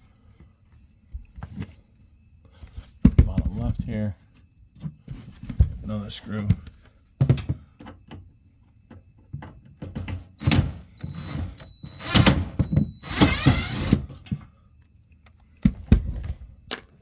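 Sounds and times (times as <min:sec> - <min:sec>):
power drill whirring: 0:10.4 - 0:14.2.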